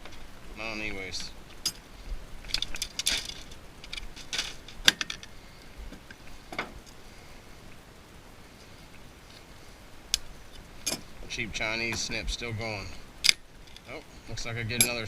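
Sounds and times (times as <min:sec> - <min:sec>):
metal clicks and clinks of hand tools: 0:14.7 - 0:15.0.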